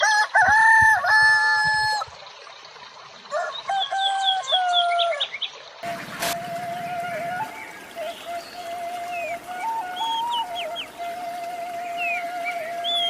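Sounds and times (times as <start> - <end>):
high bird chirps: 5.8 - 13.0.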